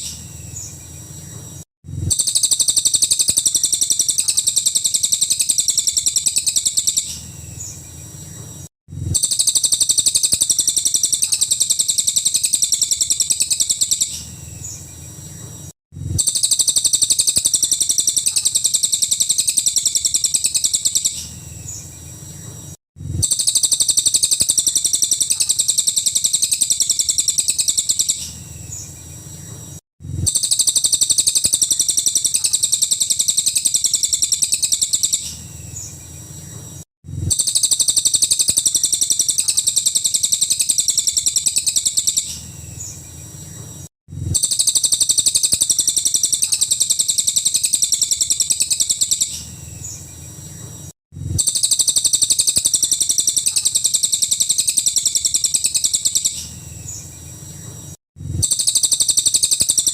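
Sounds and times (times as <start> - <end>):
rapid high-pitched bird song: 0.0 - 59.9.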